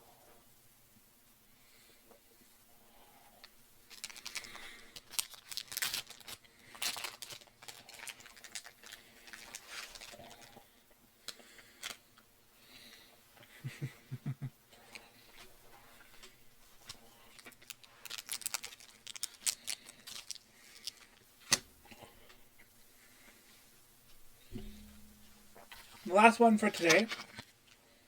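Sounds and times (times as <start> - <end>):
wrapper crinkling: 3.9 - 10.6, 16.2 - 21.6, 24.5 - 27.8.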